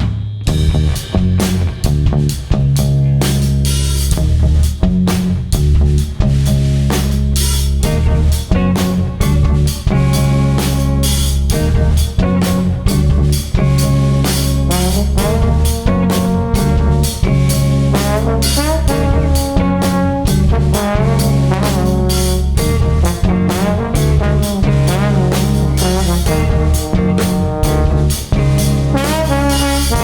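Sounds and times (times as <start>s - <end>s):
drum kit: 0.0s - 30.0s
trombone melody with slides: 6.9s - 30.0s
baritone guitar: 7.8s - 30.0s.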